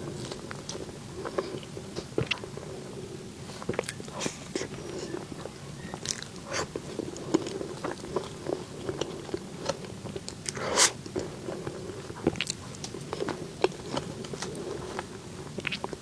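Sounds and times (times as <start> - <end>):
person biting and chewing: 6.0 - 8.4
food crunch: 6.0 - 11.3.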